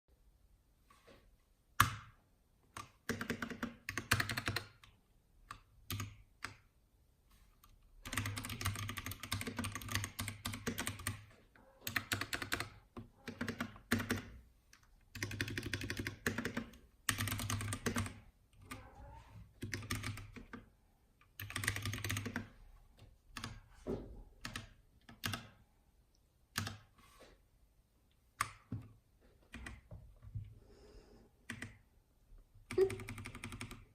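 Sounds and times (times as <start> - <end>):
mechanical keyboard typing: 2.7 - 6.8, 8.0 - 18.8, 19.6 - 22.6, 24.4 - 25.6, 26.5 - 26.9, 31.5 - 31.8, 32.7 - 33.9.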